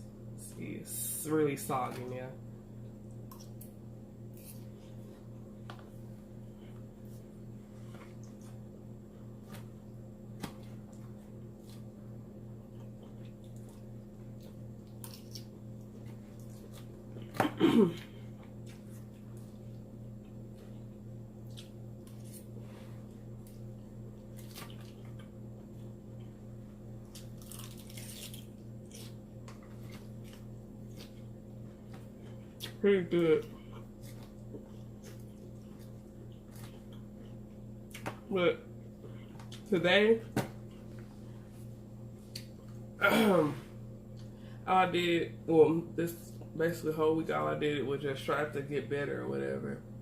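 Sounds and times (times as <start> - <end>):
steady low hum: 0.0 - 50.0
person chewing salad: 12.6 - 17.4, 18.0 - 32.8, 33.4 - 38.2, 42.2 - 42.9.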